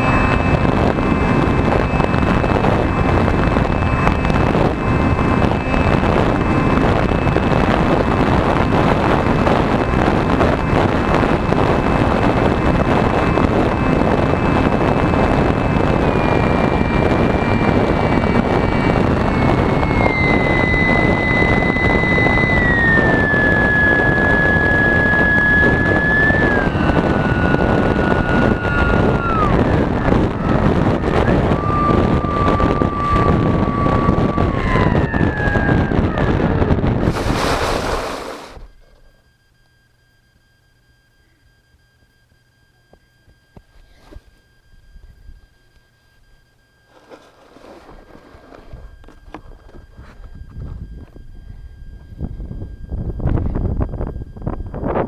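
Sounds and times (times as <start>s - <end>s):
motor and propeller whine: 0.0s - 55.0s
rush of air: 37.0s - 38.8s.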